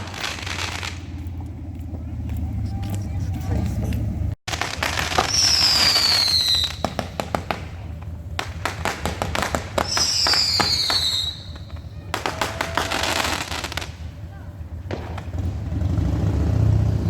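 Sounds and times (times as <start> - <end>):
firework crackling pops: 0.0 - 1.6, 4.5 - 16.0
firework whistles falling in pitch: 4.8 - 7.4, 9.4 - 13.9.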